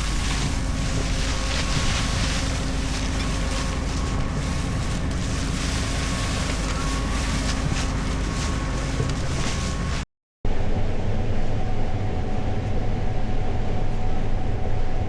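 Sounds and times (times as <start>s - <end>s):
steady whine: 0.0s - 10.0s
diesel engine rumbling: 0.0s - 10.1s.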